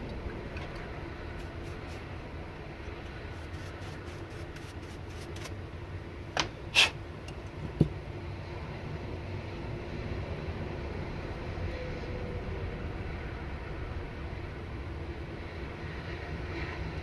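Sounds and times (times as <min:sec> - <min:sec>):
steady low hum: 0:00.0 - 0:06.2.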